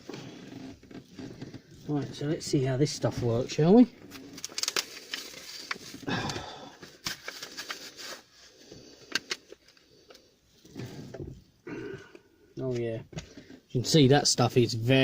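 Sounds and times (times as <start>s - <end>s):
package rustling and clicking: 4.0s - 8.3s.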